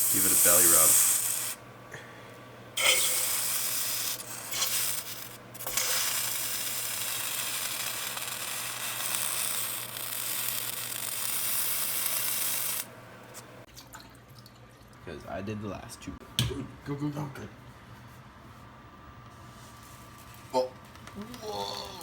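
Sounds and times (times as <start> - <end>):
blowtorch flame hissing: 0.0 - 1.6, 2.8 - 12.9.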